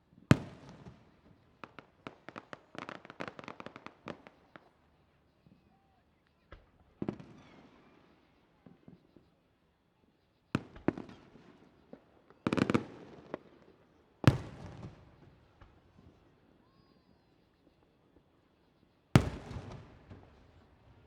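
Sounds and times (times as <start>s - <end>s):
fireworks booming with echo: 19.2s - 21.0s.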